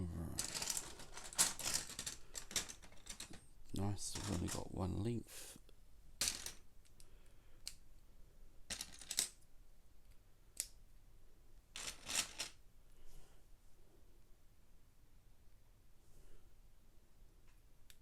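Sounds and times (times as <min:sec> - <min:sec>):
plastic bricks clicking: 0:00.4 - 0:03.4.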